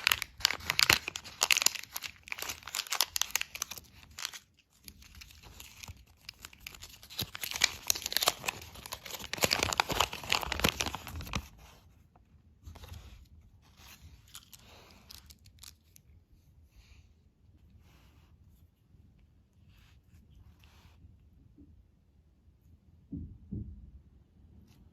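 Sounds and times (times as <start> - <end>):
plastic candy packaging crinkling: 0.0 - 11.9, 12.6 - 16.2.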